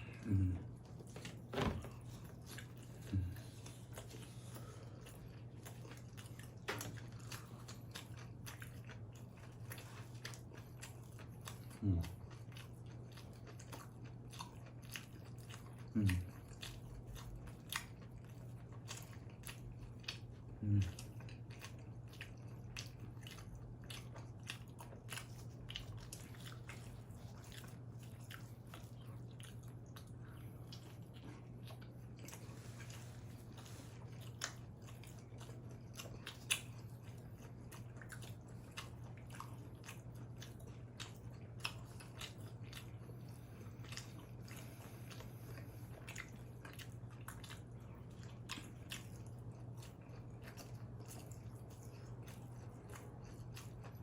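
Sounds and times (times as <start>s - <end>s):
person biting and chewing pizza: 0.0s - 54.0s.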